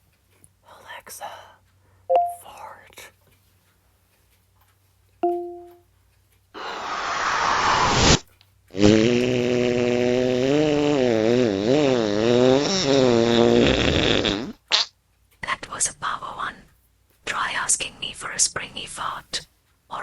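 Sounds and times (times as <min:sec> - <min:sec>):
short electronic tone: 0:02.1 - 0:02.4, 0:05.2 - 0:05.8
fart sound effects: 0:07.0 - 0:08.2, 0:08.8 - 0:14.9.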